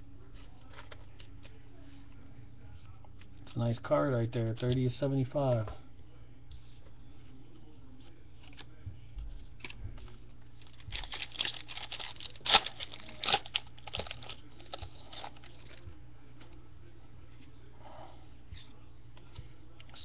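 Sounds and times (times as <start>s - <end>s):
packaging crinkling and rustling: 10.5s - 15.8s.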